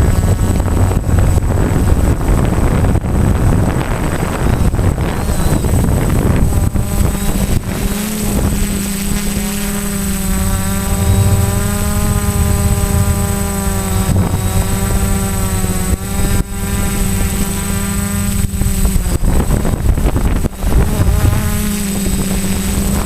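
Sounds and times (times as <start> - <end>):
drone propellers whining: 5.2 - 23.0
low rumble: 10.4 - 18.4.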